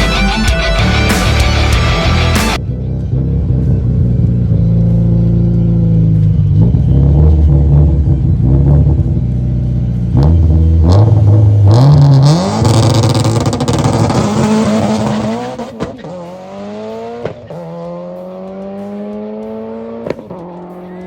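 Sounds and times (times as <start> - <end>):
car engine accelerating hard: 0.8 - 21.0.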